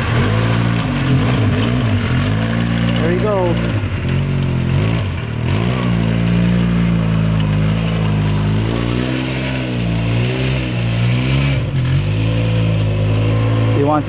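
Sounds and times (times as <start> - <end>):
off-road vehicle engine under load: 0.0 - 14.0.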